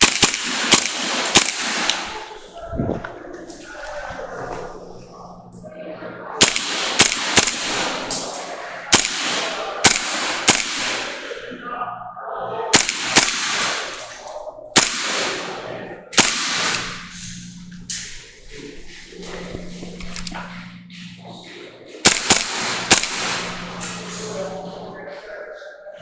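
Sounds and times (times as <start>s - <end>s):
airsoft gun shots: 0.0s - 2.5s, 6.4s - 11.5s, 12.7s - 18.3s, 22.0s - 24.4s.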